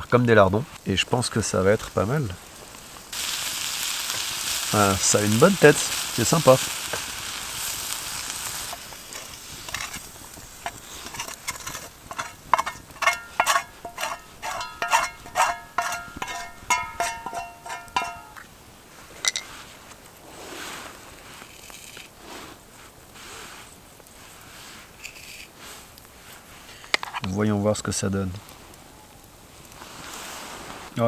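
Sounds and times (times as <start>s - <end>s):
metal utensil clinking in pan: 8.7s - 18.4s.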